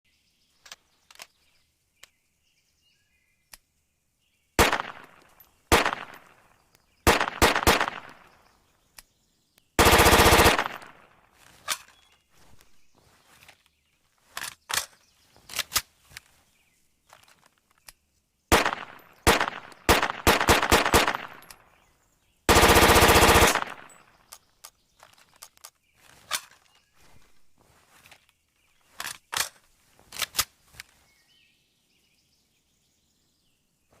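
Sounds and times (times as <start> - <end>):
submachine gun firing: 4.6 - 6.4, 7.0 - 8.4, 9.8 - 11.2, 18.5 - 21.5, 22.5 - 24.1.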